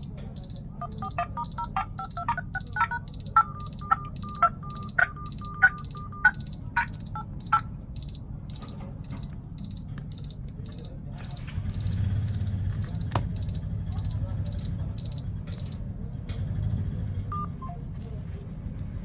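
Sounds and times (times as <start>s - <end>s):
ringtone melody: 0.0s - 8.8s
high electronic beep: 0.0s - 15.8s.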